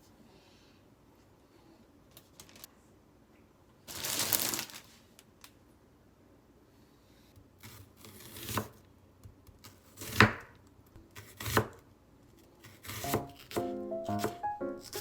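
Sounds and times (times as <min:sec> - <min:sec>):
knife cutting on cutting board: 0:12.6 - 0:15.0
light background music: 0:13.0 - 0:15.0.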